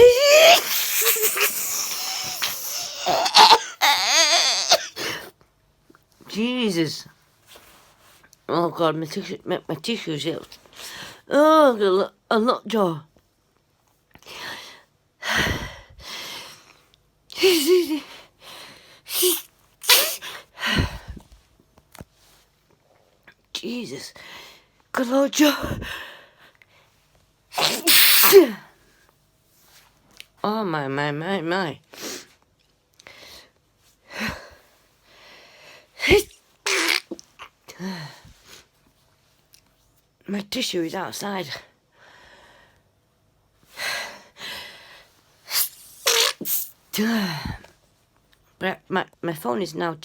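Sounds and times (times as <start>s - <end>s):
woman sneezing: 0.0s - 5.3s, 17.4s - 18.1s, 19.1s - 20.4s, 27.6s - 28.7s, 36.0s - 37.2s, 45.5s - 46.8s.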